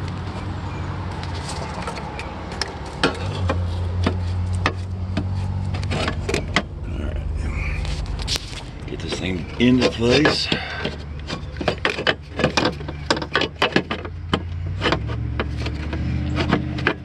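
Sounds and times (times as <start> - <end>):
steady low hum: 3.8 - 11.6
sharp clicks and light knocks: 8.0 - 17.0.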